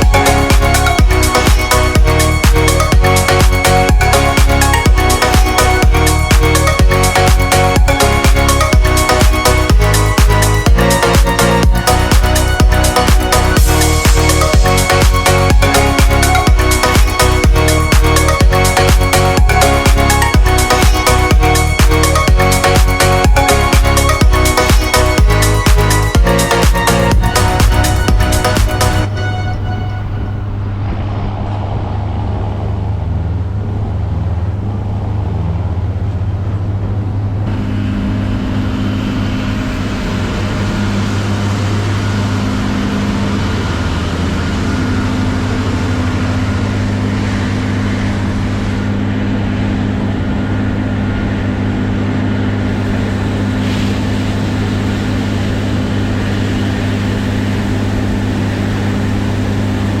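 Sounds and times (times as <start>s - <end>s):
bright rushing noise: 0.0s - 34.8s
farm machinery engine hum: 0.0s - 60.0s.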